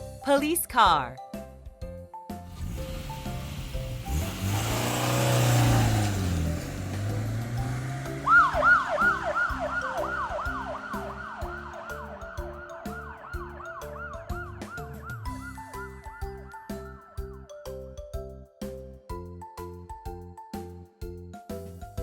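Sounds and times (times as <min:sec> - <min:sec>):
children's background music: 0:00.0 - 0:22.0
cartoon police siren yelping: 0:08.3 - 0:17.4.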